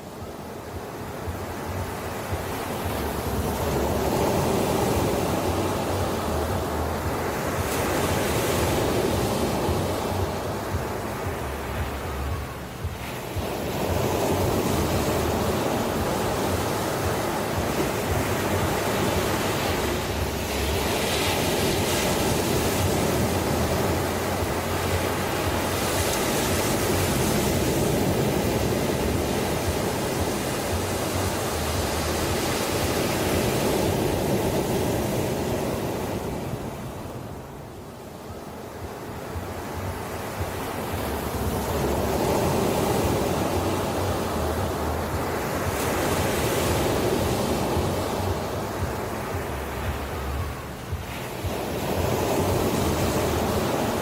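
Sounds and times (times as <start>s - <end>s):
ocean waves breaking on shore: 0.0s - 54.0s.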